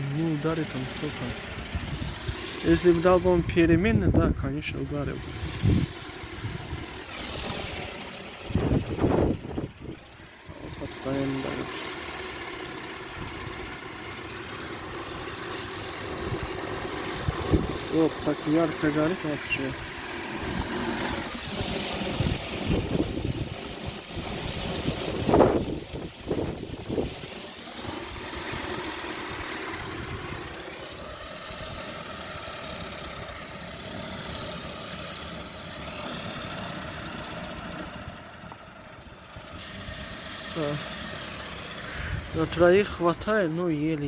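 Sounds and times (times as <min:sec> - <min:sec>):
wind gusting on microphone: 0:01.1 - 0:11.0, 0:16.1 - 0:18.3, 0:19.4 - 0:30.6, 0:41.6 - 0:44.0.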